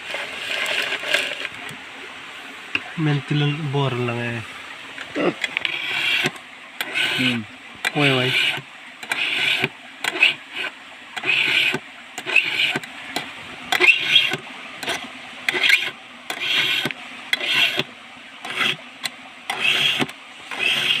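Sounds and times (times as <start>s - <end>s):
file scraping chainsaw chain: 5.4s - 12.9s, 13.7s - 18.8s, 19.5s - 21.0s.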